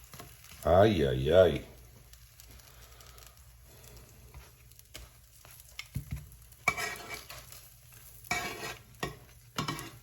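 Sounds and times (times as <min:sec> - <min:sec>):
faint sizzle from hot pan: 0:00.0 - 0:10.0
utensil scraping pan: 0:06.5 - 0:10.0.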